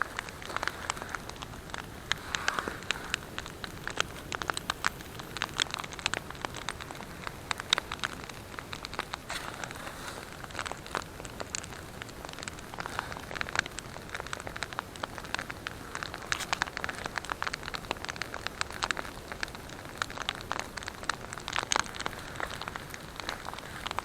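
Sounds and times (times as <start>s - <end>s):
campfire crackling: 0.0s - 24.0s.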